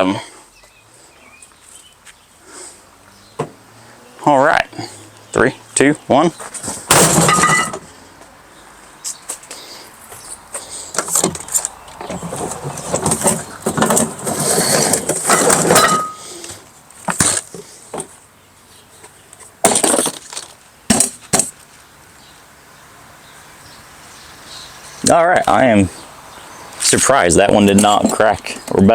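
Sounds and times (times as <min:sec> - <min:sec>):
plastic toolbox clattering and scraping: 0:06.6 - 0:07.9, 0:11.0 - 0:18.1, 0:19.6 - 0:21.5.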